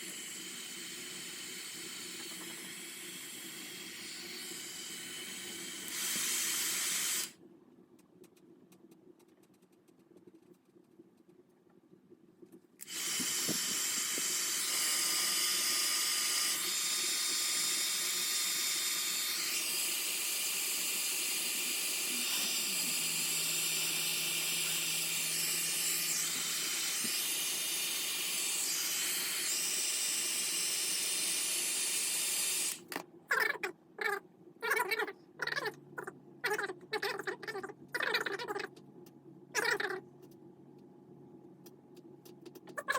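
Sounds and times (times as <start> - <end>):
low steady hum: 0.0 - 19.3, 32.6 - 42.9.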